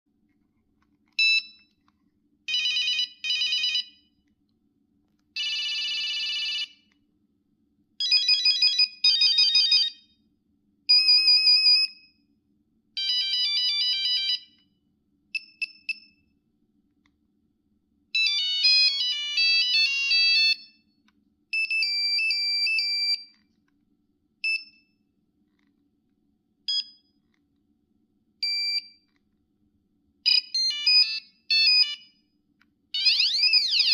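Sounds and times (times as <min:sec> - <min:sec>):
phone ringtone beeping melodies: 0:18.2 - 0:20.6, 0:30.3 - 0:32.1, 0:33.0 - 0:33.9.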